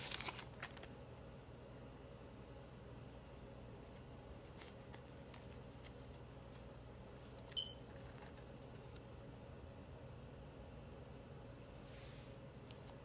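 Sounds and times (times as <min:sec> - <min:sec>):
paper rustling: 0:00.0 - 0:01.0, 0:02.5 - 0:09.0, 0:11.9 - 0:13.0.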